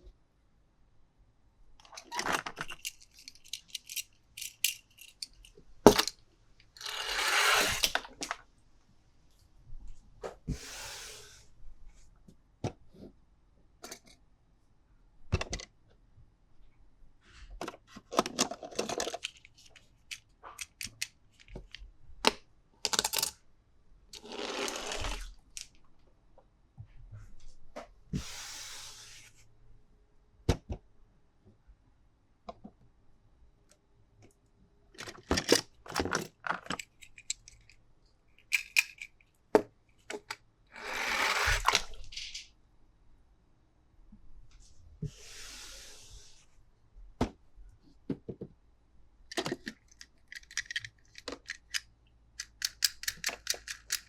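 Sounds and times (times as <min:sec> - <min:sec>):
plastic toy clicks and knocks: 0:02.0 - 0:06.2, 0:18.1 - 0:21.8, 0:22.8 - 0:23.4, 0:35.0 - 0:37.8, 0:38.4 - 0:39.3, 0:49.3 - 0:54.0.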